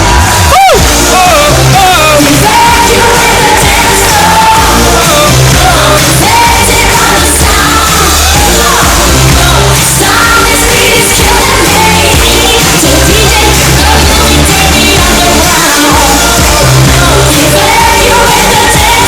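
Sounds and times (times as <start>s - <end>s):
dance-pop song through loudspeakers: 0.0s - 19.0s
woman singing: 1.2s - 19.0s.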